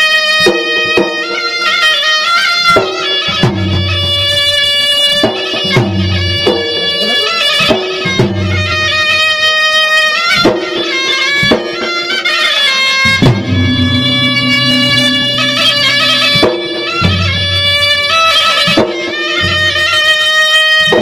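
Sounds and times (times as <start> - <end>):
double-reed shawm melody: 10.8 - 20.5
drum strokes: 13.0 - 19.0.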